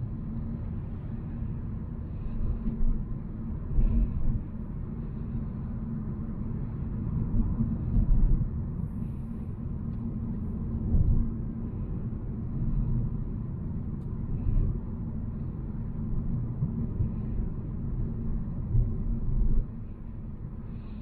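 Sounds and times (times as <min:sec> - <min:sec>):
car engine rumble: 0:00.0 - 0:21.0.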